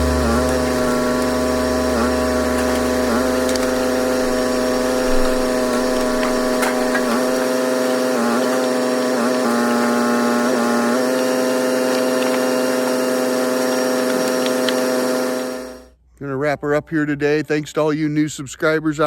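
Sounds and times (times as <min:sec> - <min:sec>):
deep rumble: 0:00.0 - 0:07.4
engine running steadily: 0:00.0 - 0:15.8.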